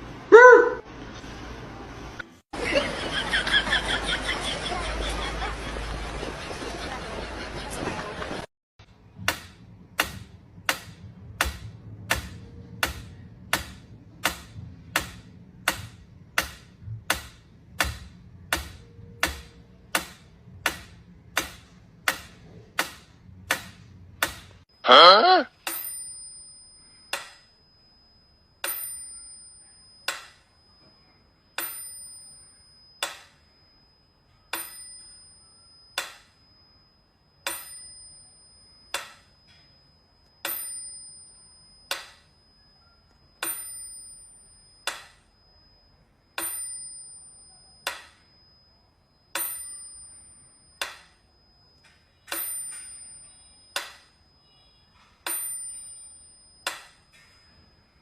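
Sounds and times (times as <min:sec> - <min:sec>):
small bell struck: 0:25.6 - 0:58.0.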